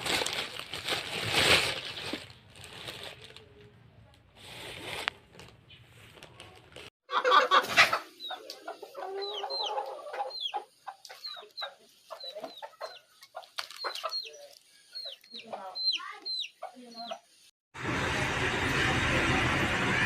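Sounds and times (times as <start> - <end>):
loud rustling: 0.0 - 3.4
birds clucking: 7.1 - 17.4
birds chirping: 8.1 - 17.4.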